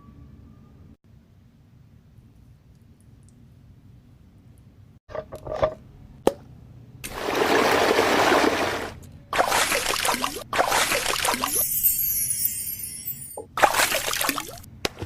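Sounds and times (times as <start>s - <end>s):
liquid trickling and splashing: 9.4s - 11.8s.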